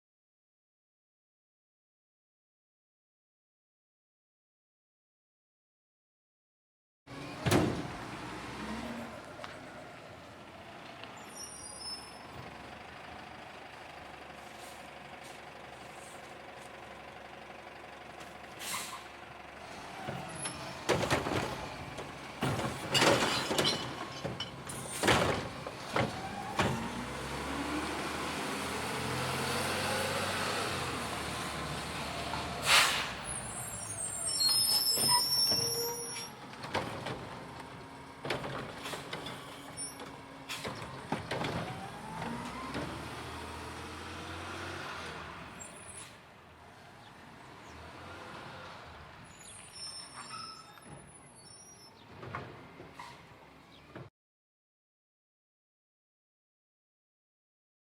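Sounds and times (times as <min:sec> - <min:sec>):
air hiss with squeals: 0:11.2 - 0:12.3, 0:32.6 - 0:36.3, 0:49.3 - 0:52.0
garbage truck engine running: 0:12.1 - 0:29.4
bin banging and clanking: 0:20.9 - 0:21.7, 0:22.4 - 0:27.0.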